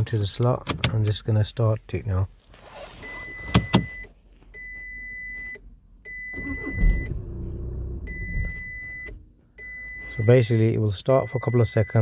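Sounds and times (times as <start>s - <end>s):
ignition clicks: 0.0s - 1.3s, 3.0s - 10.6s
dashboard warning chime beeping: 3.0s - 12.0s
diesel engine cranking and running: 6.1s - 9.4s.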